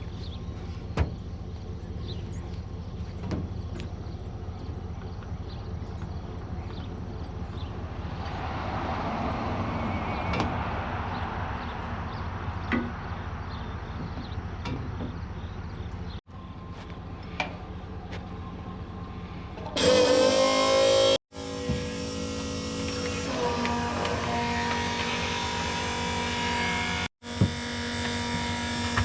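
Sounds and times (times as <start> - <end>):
combine harvester droning: 0.0 - 29.0.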